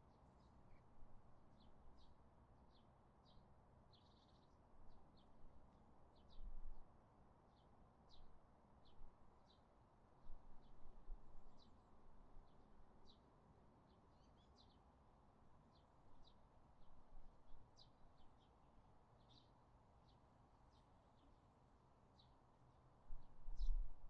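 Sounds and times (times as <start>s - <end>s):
small birds chirping: 1.6s - 5.3s, 13.8s - 14.9s, 19.2s - 21.4s.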